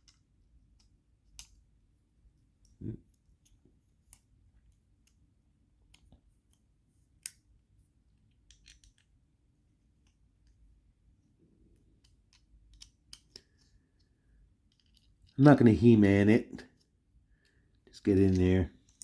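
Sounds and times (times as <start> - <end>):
small metal parts clicking: 0.0 - 1.6, 8.3 - 9.2, 12.0 - 14.0, 14.7 - 15.4.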